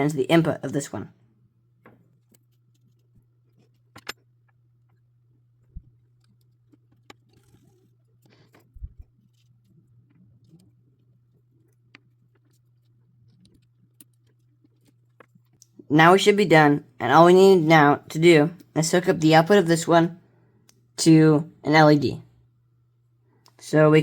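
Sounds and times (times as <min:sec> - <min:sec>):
wires clicking into breadboard: 0:01.8 - 0:05.0
steady low hum: 0:08.4 - 0:12.0.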